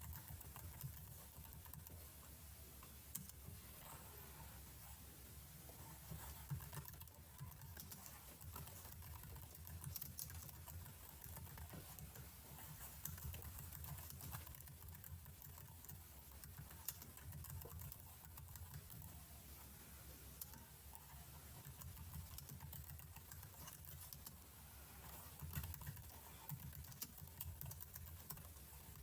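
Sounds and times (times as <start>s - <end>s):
computer keyboard keys clicking: 0.0s - 1.9s, 6.5s - 12.1s, 13.0s - 19.1s, 21.6s - 24.4s, 25.4s - 28.6s.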